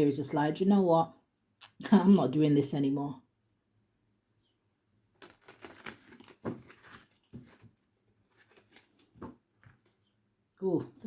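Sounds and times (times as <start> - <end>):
cards rustling and tapping: 5.2 - 10.0.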